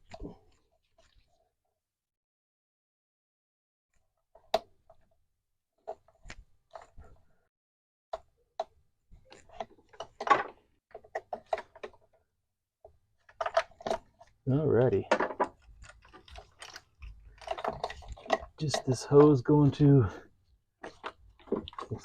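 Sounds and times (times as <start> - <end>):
tools clicking and knocking: 15.1 - 19.4.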